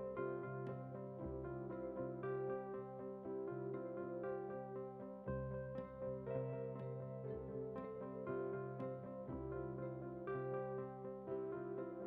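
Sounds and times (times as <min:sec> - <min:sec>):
soft instrumental music: 0:00.0 - 0:12.0.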